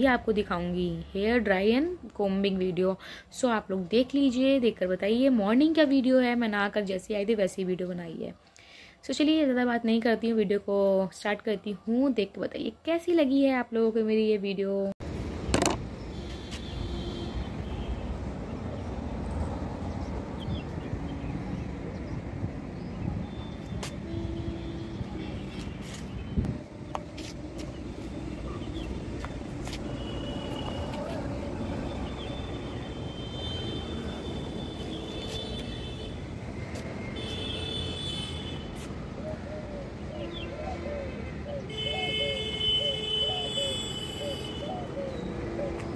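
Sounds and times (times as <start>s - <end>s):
road traffic rumble: 0.0s - 9.9s, 14.8s - 45.9s
motorbikes passing: 17.5s - 37.6s.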